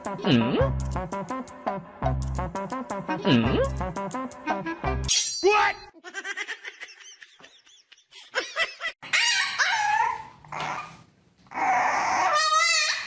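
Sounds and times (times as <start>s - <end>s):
dog whining and yelping: 9.0s - 13.0s.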